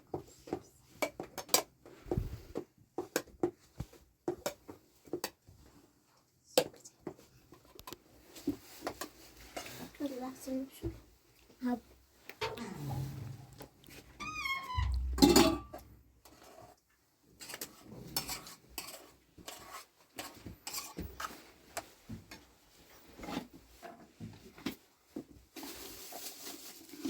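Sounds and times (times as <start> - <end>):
heavy thump: 12.5 - 16.0.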